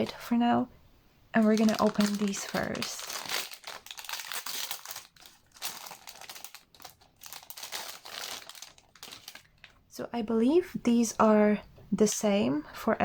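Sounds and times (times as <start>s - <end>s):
packaging wrap crinkling: 1.4s - 9.8s.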